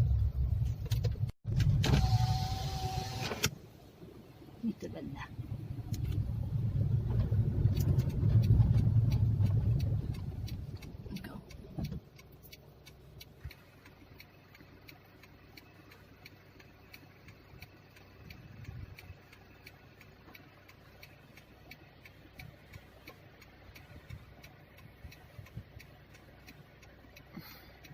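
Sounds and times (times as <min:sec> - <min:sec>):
faint low engine rumble: 0:00.0 - 0:01.8, 0:03.5 - 0:27.9
car indicator clicking: 0:07.6 - 0:27.9.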